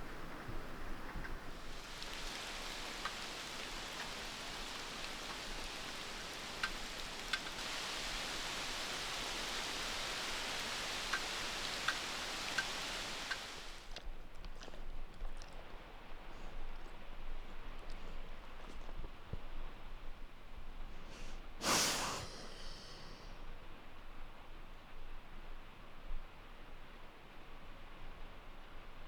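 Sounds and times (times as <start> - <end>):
single loud raindrops: 0.0 - 13.9
steady rain falling: 0.0 - 14.0.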